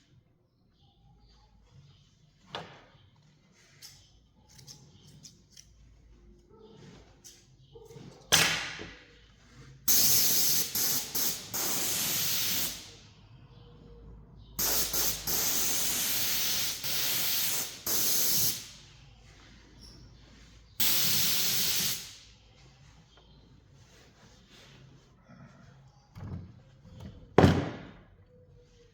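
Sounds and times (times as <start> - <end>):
spray hissing: 9.9 - 13.0, 14.6 - 18.9, 20.8 - 22.3.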